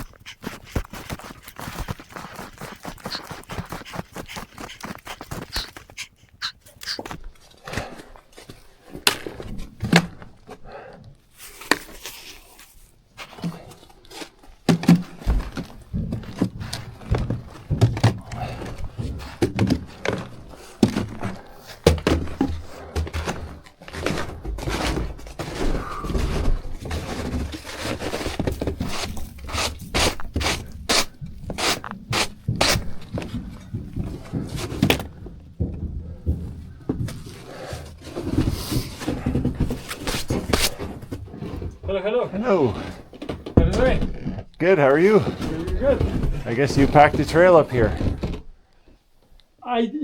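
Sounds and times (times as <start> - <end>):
scrapes: 0.0 - 48.5
knocks and thumps: 14.6 - 42.1, 42.7 - 48.6.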